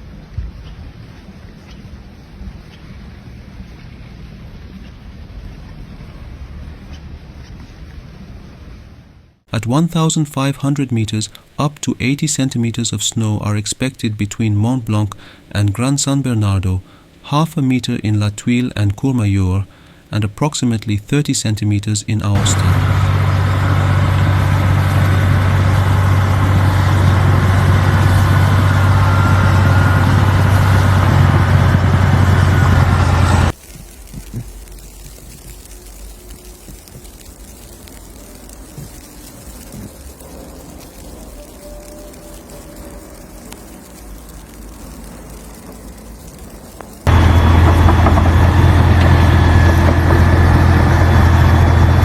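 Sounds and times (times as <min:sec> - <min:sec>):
vehicle engine humming: 0:21.8 - 0:34.4, 0:37.8 - 0:52.0
constant rushing noise: 0:22.0 - 0:52.0
low rumble: 0:22.2 - 0:33.6, 0:46.9 - 0:52.0.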